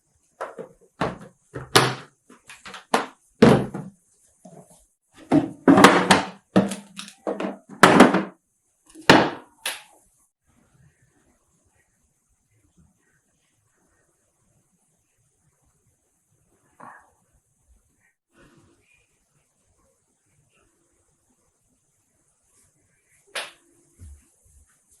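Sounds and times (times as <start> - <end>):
household knocks and thuds: 0.4 - 4.6, 5.2 - 8.4, 9.1 - 9.5.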